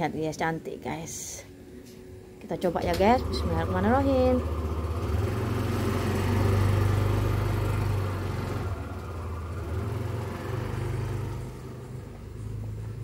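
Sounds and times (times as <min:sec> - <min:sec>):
motor humming: 0:02.8 - 0:12.9.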